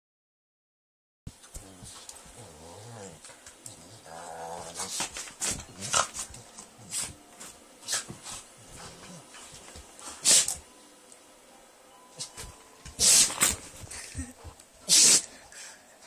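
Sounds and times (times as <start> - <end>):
dog growling: 2.3 - 7.2, 8.6 - 9.4
dog sneezing: 7.8 - 8.1, 10.2 - 10.6, 13.0 - 13.6, 14.8 - 15.3.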